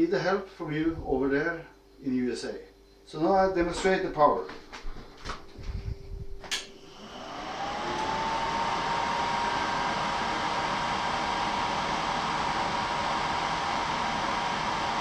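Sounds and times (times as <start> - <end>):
blower motor whine and air rush: 5.7 - 15.0
furnace switch click: 6.5 - 6.7.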